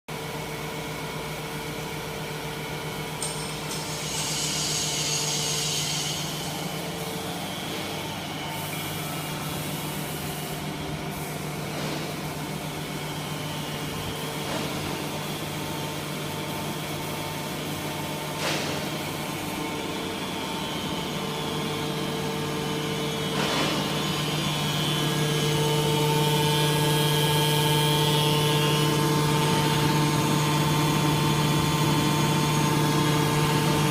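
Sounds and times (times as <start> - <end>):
hydraulic unit humming: 1.3 - 33.9
hiss: 3.8 - 6.9.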